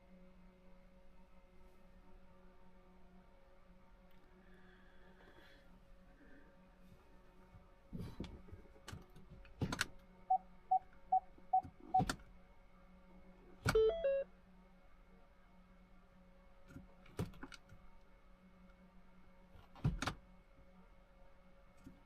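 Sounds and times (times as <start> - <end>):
faint steady hum: 0.0 - 22.0
short electronic beeps: 13.8 - 14.2.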